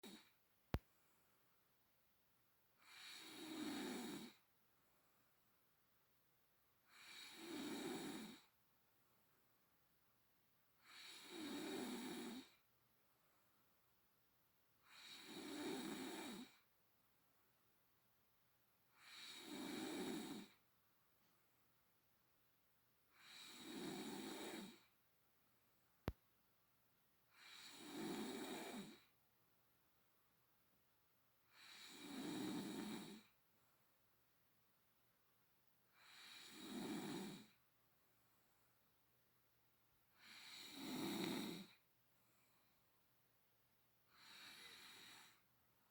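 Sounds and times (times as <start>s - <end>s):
woman snoring: 0.0s - 0.3s, 2.8s - 4.4s, 6.9s - 8.5s, 10.8s - 12.6s, 14.8s - 16.6s, 19.0s - 20.6s, 23.1s - 24.9s, 27.3s - 29.1s, 31.5s - 33.3s, 35.9s - 37.6s, 40.2s - 41.8s, 44.1s - 45.4s.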